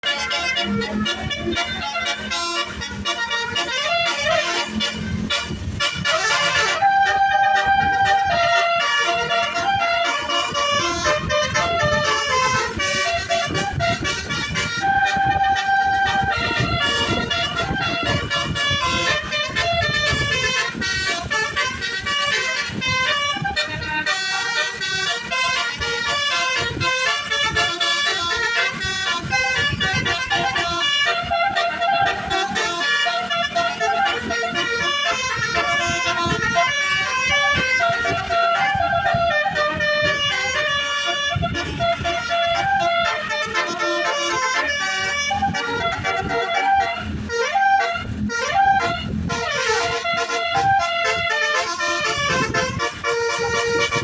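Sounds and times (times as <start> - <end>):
musical bus horn melody: 0.0 - 54.0
road and engine rumble: 0.0 - 54.0.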